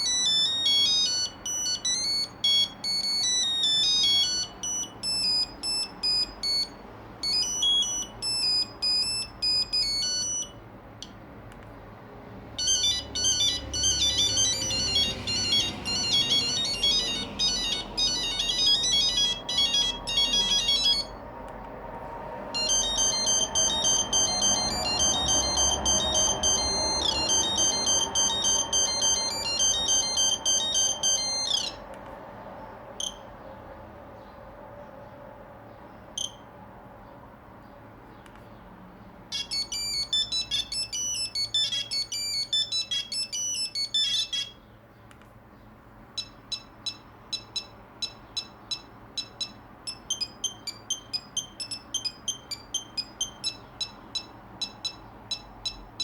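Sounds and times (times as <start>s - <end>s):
mobile phone beeping ringtones: 0.0s - 10.6s, 12.6s - 21.2s, 22.6s - 31.8s, 33.0s - 33.3s, 36.2s - 36.5s, 39.3s - 44.7s, 46.2s - 56.0s.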